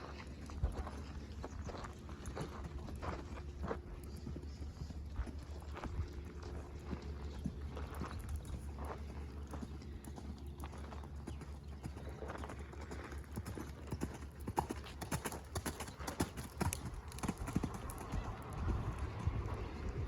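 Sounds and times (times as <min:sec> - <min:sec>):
steady low rumble: 0:00.0 - 0:12.2, 0:16.5 - 0:20.0
horse hoofbeats: 0:00.0 - 0:20.0.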